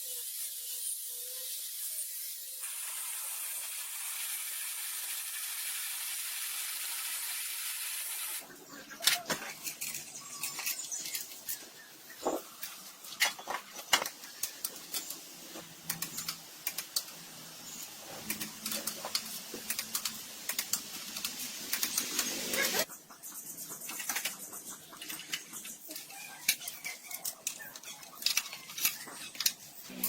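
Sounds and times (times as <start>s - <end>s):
steady hiss: 0.0s - 8.4s.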